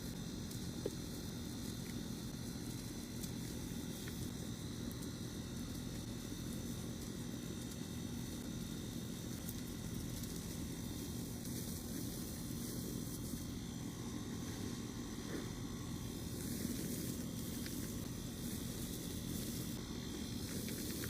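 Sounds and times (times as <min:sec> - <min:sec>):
steady hiss: 0:00.0 - 0:21.0
chalk crumbling by hand: 0:14.2 - 0:21.0.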